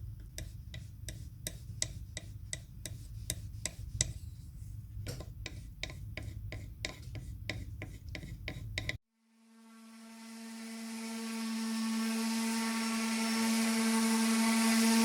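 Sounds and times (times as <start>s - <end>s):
sharp clicking tool strokes: 5.2s - 9.0s
low hum: 8.4s - 15.0s.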